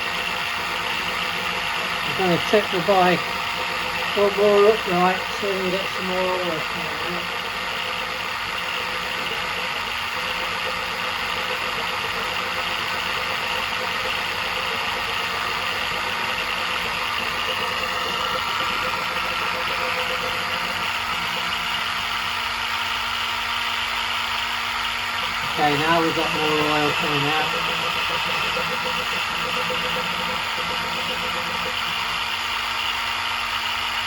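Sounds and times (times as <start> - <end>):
oil extraction pump humming: 0.0 - 34.0.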